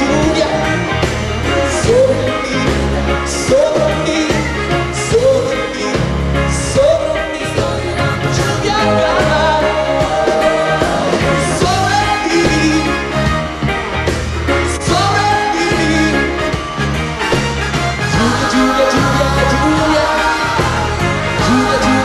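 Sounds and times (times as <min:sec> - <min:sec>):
bass and drum beat: 0:00.0 - 0:22.0.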